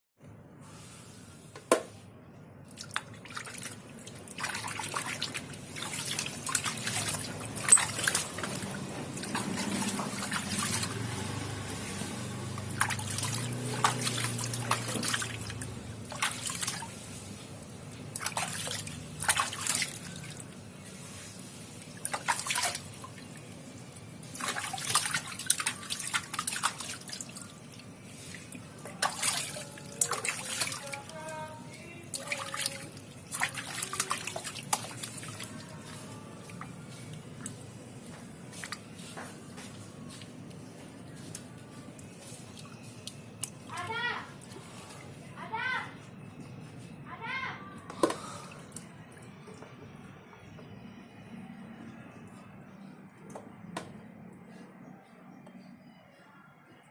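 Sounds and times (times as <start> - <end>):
water splashing and dripping: 2.7 - 40.6, 41.2 - 45.1
running water: 2.8 - 37.7.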